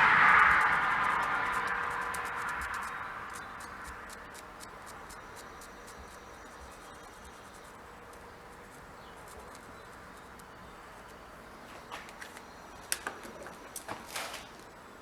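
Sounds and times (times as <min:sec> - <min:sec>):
faint steady hiss: 0:00.0 - 0:15.0
sharp clicks and taps: 0:00.5 - 0:08.3.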